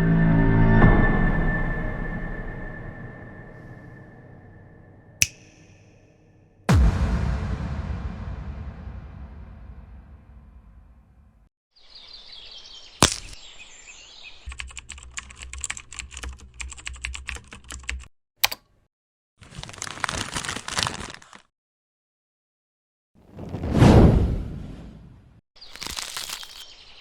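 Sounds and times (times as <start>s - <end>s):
sharp click: 5.2s - 6.0s, 18.4s - 18.7s
low hum: 6.7s - 11.4s.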